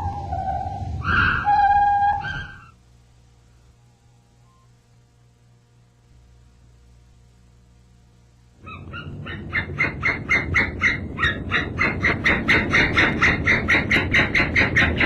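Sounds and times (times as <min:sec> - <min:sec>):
rapid repeated bird-like call: 0:00.0 - 0:02.8, 0:08.6 - 0:15.0
low rumble: 0:00.0 - 0:04.1.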